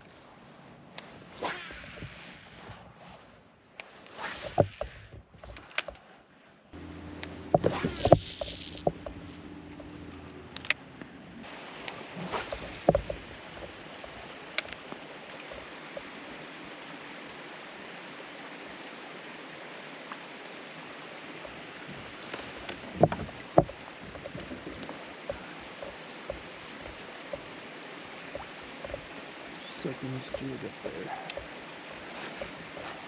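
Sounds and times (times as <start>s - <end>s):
water lapping around kayak: 0.0s - 33.0s
knocks on kayak: 7.0s - 8.2s.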